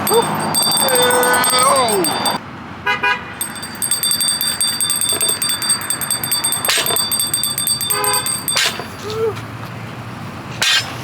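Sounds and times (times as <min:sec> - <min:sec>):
tinkling metal rattle shaken: 0:00.0 - 0:02.4, 0:03.4 - 0:09.0.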